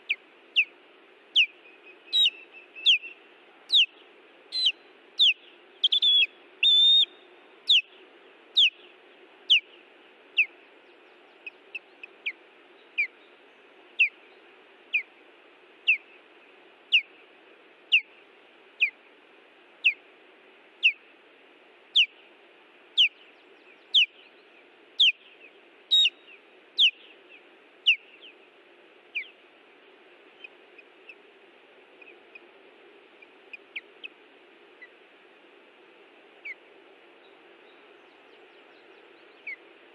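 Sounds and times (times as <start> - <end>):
osprey alarm calls: 0.0 - 3.9, 4.5 - 7.9, 8.5 - 8.8, 9.5 - 9.7, 14.0 - 14.2, 15.8 - 16.1, 16.9 - 17.1, 17.9 - 18.1, 18.8 - 19.0, 19.8 - 20.0, 20.8 - 21.0, 21.9 - 22.1, 23.0 - 23.2, 23.9 - 24.1, 25.0 - 25.2, 25.9 - 27.0, 27.8 - 28.4, 29.1 - 29.4, 30.4 - 31.3, 33.2 - 35.0, 36.4 - 36.6
low steady hiss: 0.0 - 39.9.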